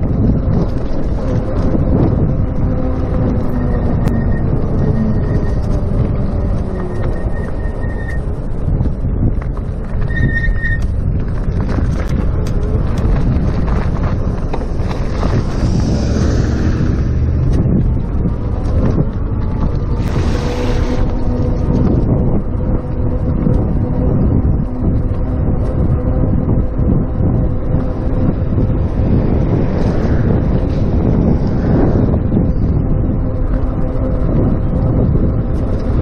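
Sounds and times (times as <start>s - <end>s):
bicycle road rumble: 0.0s - 36.0s
wind buffeting microphone: 0.0s - 36.0s
bicycle brakes squealing: 3.6s - 5.8s, 6.7s - 8.2s, 10.0s - 11.0s.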